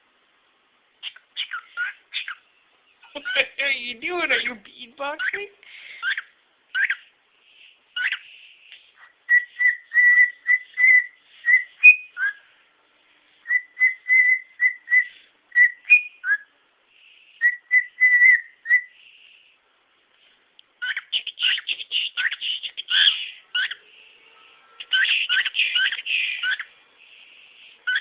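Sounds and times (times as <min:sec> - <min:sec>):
cockatiel whistled chirps: 0:01.0 - 0:02.4, 0:09.3 - 0:12.4, 0:13.4 - 0:16.5, 0:17.4 - 0:19.0.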